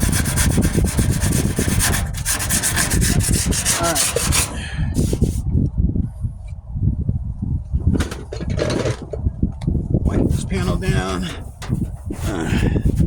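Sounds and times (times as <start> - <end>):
hand sanding on metal: 0.0 - 5.4, 10.1 - 13.0.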